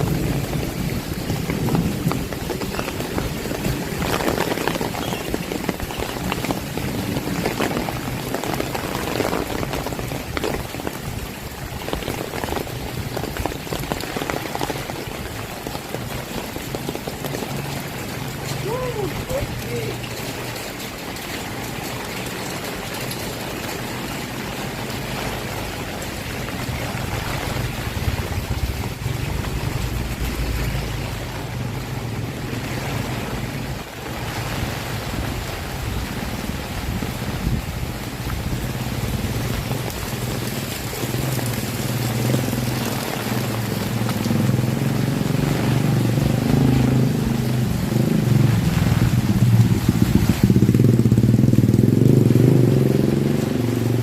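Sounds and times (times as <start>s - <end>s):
heavy rain hiss: 0.0s - 54.0s
vehicle engine hum: 14.2s - 54.0s.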